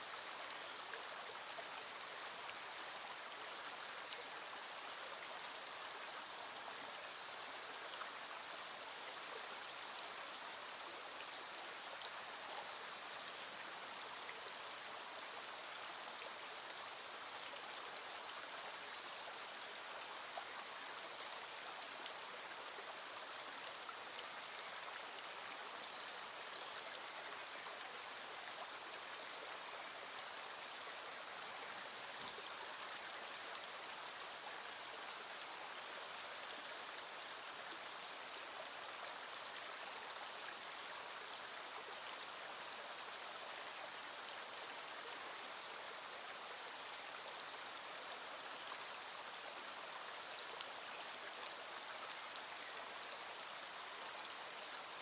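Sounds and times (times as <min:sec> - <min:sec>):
small stream running: 0:00.0 - 0:55.0.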